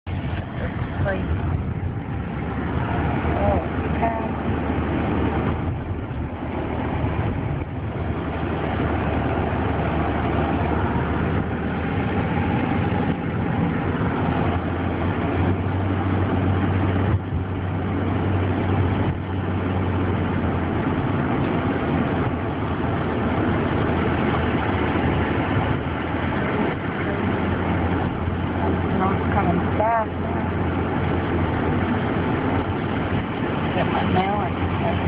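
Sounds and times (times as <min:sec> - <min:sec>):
vehicle engine humming: 0:00.0 - 0:35.0.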